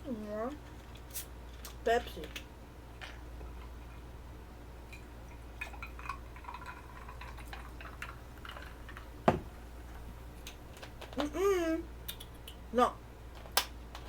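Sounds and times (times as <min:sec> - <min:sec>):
faint fizzing: 0:04.8 - 0:10.1
soda pouring into a glass: 0:04.9 - 0:09.2.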